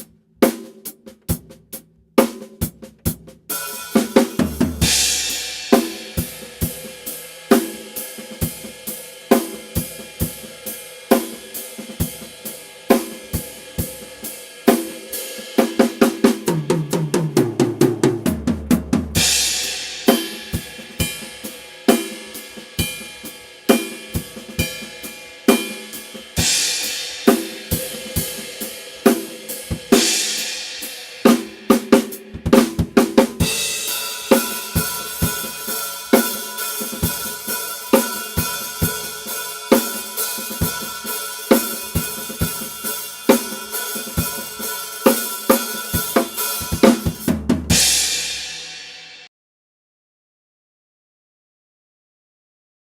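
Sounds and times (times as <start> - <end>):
drum kit groove: 0.0 - 49.3
tom drum fill: 2.6 - 6.8, 16.4 - 21.2, 45.5 - 48.8
crash cymbal: 47.7 - 49.3.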